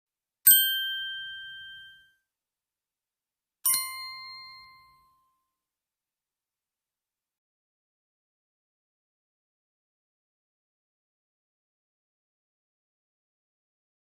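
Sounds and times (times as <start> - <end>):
small bell ringing: 0.5 - 2.2, 3.7 - 5.4.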